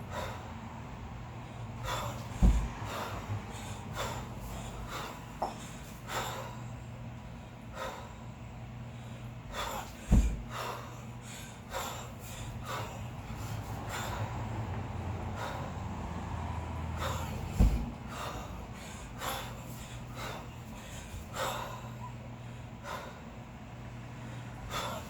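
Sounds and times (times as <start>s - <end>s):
sharp forceful breaths: 0.0s - 25.0s
kettlebells landing with thuds: 1.8s - 3.2s, 3.9s - 5.9s, 9.5s - 10.9s, 17.0s - 20.4s.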